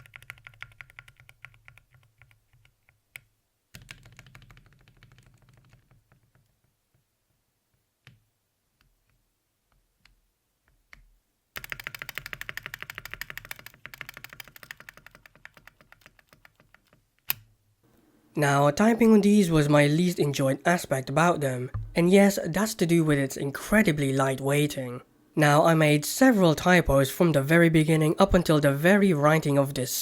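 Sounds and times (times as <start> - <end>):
mechanical keyboard typing: 0.0 - 3.0, 3.8 - 6.6, 11.6 - 17.4.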